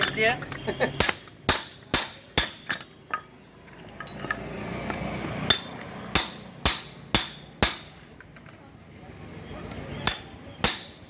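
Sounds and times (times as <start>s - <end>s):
hammer striking metal pipe: 1.0s - 2.9s, 5.5s - 8.1s, 10.1s - 11.0s.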